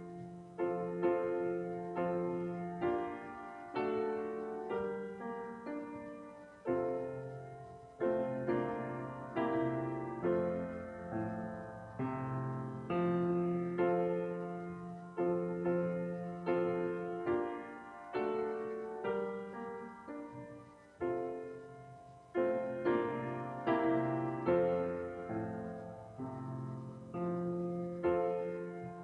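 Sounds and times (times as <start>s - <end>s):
solo piano chords: 0.0s - 29.0s.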